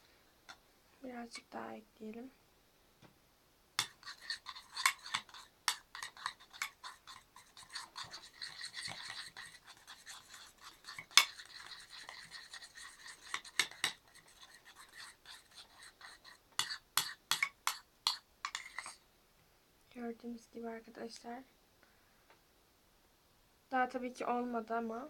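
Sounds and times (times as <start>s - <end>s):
spoon scraping and tapping a plate: 3.8s - 19.0s.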